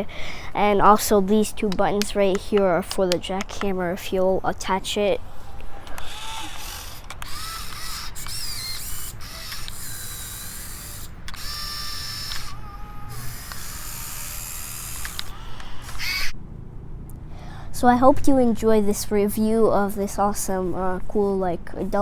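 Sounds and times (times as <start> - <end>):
small electric motors whirring: 5.4 - 16.4.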